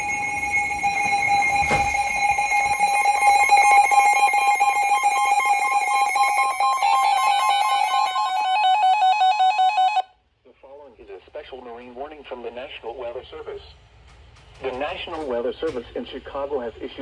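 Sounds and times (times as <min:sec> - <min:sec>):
harsh electronic alarm tone: 0:00.0 - 0:10.1.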